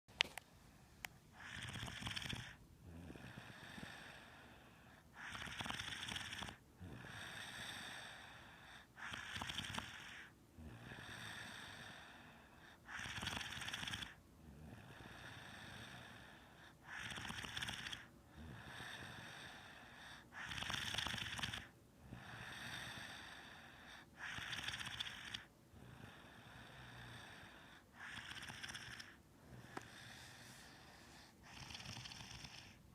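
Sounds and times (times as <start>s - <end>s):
person snoring: 1.4s - 32.8s.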